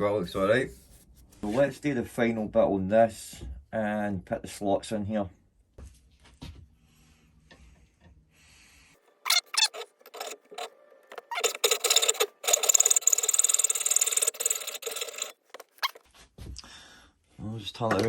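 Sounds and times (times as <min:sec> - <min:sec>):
lathe tool cutting metal: 0:11.3 - 0:15.3.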